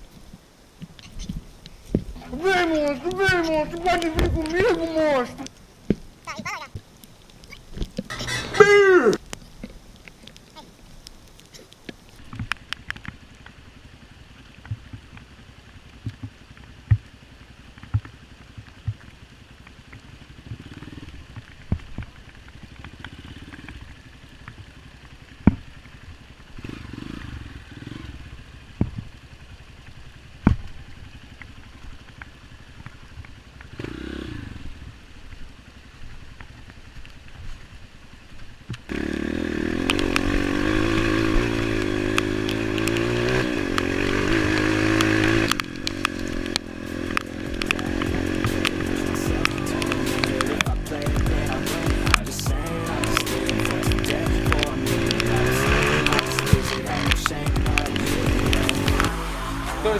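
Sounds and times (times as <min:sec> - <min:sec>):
motorcycle engine running loudly: 0:20.0 - 0:34.8, 0:38.9 - 0:59.9.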